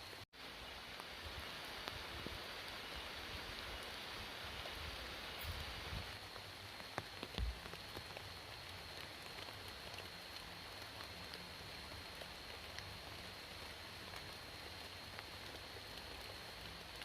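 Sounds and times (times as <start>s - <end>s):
steady rain falling: 0.0s - 17.0s
raindrop ticks: 4.6s - 17.0s.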